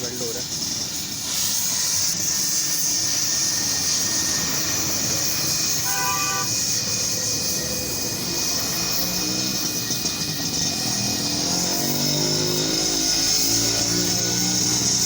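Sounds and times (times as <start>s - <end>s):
welding hiss: 0.0s - 15.0s
short tone: 5.8s - 6.6s.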